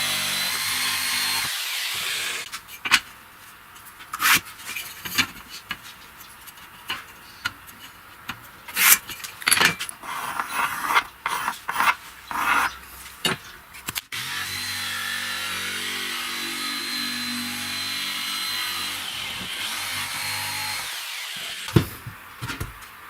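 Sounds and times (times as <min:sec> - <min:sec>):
hand tool scraping and rubbing: 0:09.8 - 0:13.2.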